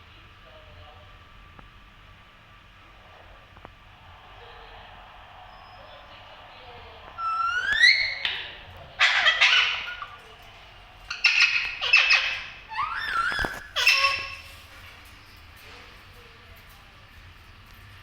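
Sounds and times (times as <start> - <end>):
parrot harsh calls: 7.1 - 14.8
parrot whistling: 7.2 - 10.4, 11.1 - 14.6.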